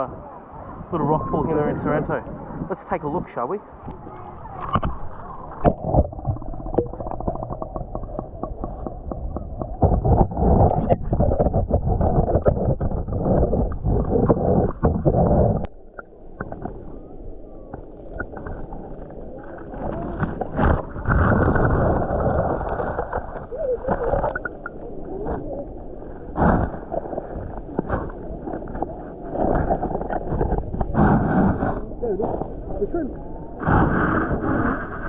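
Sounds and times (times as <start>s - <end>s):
wind buffeting microphone: 0.0s - 15.7s
seawater gurgling in rock pool: 0.0s - 35.0s.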